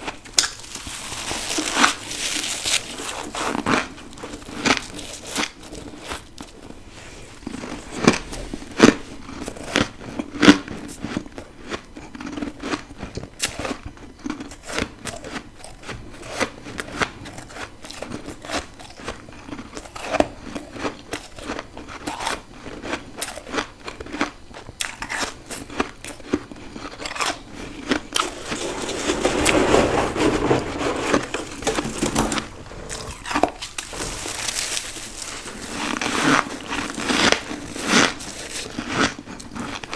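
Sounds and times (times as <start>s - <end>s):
crunching ice: 0.0s - 6.7s, 17.8s - 39.9s.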